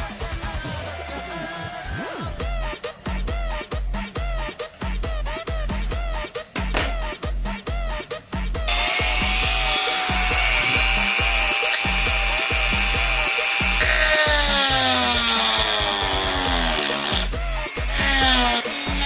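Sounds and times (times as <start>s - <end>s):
dance music with bass beat: 2.2s - 9.4s
power tool running: 8.7s - 19.0s.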